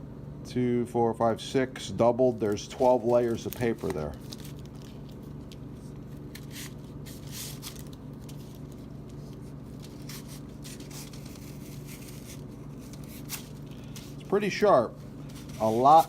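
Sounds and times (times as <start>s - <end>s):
steady low hum: 0.0s - 16.0s
knife slicing through paper: 6.4s - 14.2s, 15.3s - 16.0s.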